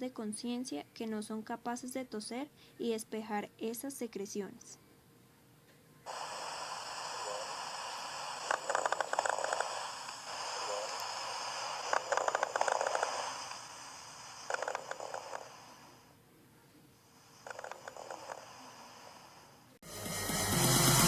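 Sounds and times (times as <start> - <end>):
steady hiss: 6.0 - 16.2, 16.9 - 19.8
wet rattle with breathing: 6.1 - 16.1, 17.1 - 19.5.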